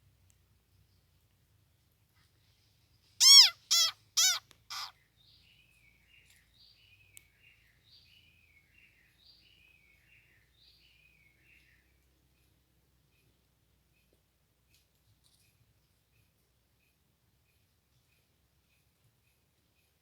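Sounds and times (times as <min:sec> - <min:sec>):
faint bird singing: 0:02.3 - 0:14.3
loud harsh calls: 0:03.2 - 0:04.9.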